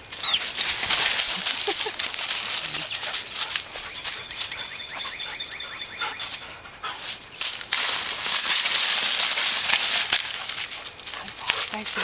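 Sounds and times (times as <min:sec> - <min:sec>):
dog panting: 0:00.2 - 0:07.4, 0:10.4 - 0:12.0.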